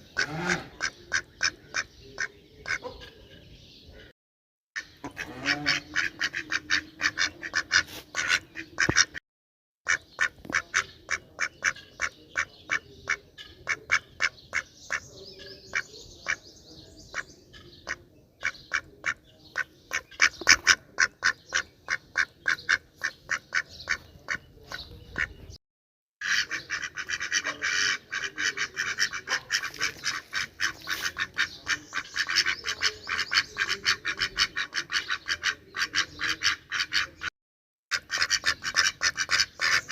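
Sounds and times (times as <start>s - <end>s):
ducks quacking: 0.0s - 3.2s, 4.8s - 9.2s, 9.9s - 25.6s, 26.2s - 37.3s, 37.9s - 39.9s.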